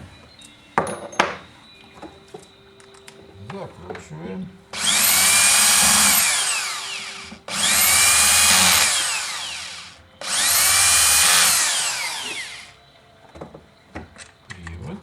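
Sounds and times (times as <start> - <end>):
electric drill driving screws: 4.8 - 12.8.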